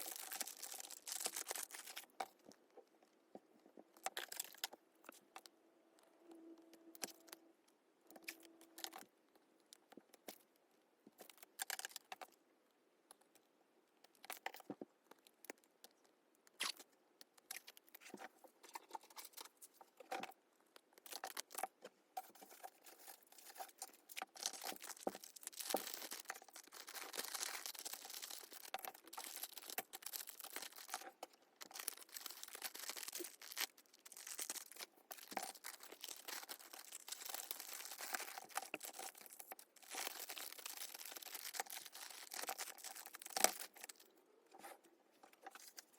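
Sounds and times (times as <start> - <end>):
plastic tearing: 0.0 - 2.2, 22.3 - 44.1
plastic packaging crinkling: 0.0 - 2.6, 21.0 - 44.1.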